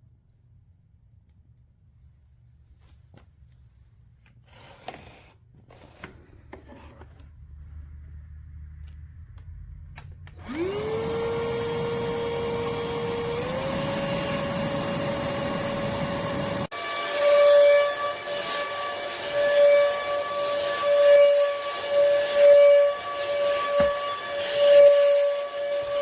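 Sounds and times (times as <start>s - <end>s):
vacuum cleaner motor whine: 10.3s - 26.0s.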